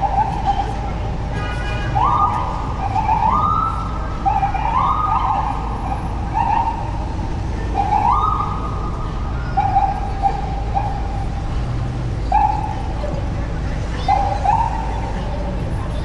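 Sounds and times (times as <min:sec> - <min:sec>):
low traffic rumble: 0:00.0 - 0:16.0
siren whooping: 0:02.0 - 0:07.1, 0:07.8 - 0:08.8.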